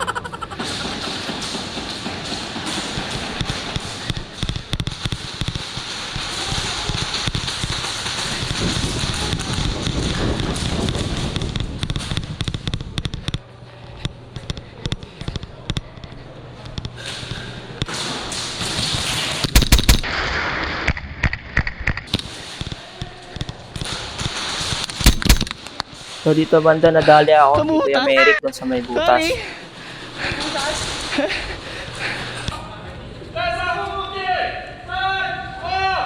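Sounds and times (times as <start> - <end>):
airsoft guns firing: 0.6 - 13.4, 17.8 - 21.0, 22.1 - 26.1.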